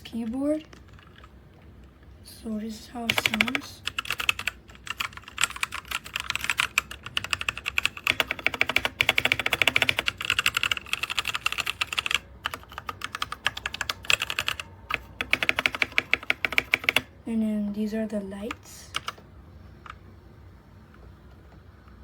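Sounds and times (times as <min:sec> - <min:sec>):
mechanical keyboard typing: 0:00.7 - 0:01.3, 0:03.1 - 0:17.1, 0:18.4 - 0:19.2.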